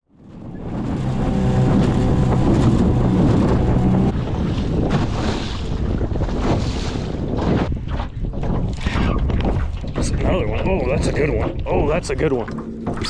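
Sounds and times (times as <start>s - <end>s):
water noise: 0.0s - 13.0s
small boat motor running: 0.1s - 6.6s, 11.5s - 13.0s
wind on microphone: 0.2s - 13.0s.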